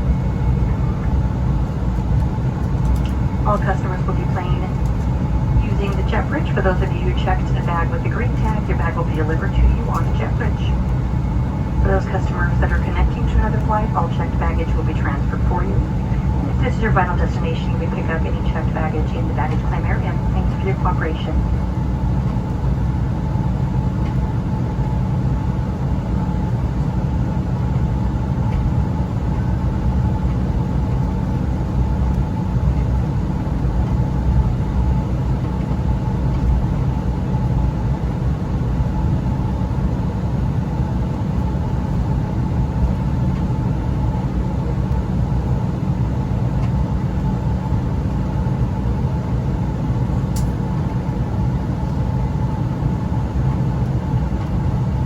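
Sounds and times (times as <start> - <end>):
faint steady whine: 0.0 - 55.0
jet engines idling: 0.0 - 55.0.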